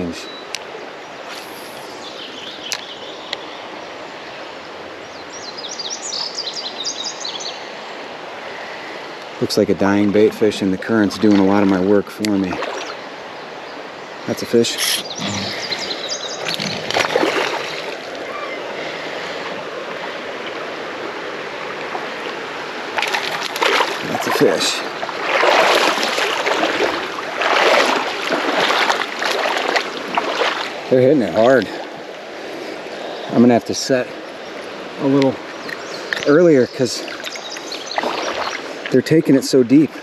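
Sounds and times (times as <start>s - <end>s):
bird chirping: 0.0s - 4.4s, 5.1s - 8.0s, 12.6s - 17.1s, 34.2s - 38.7s
flowing creek water: 0.0s - 40.0s.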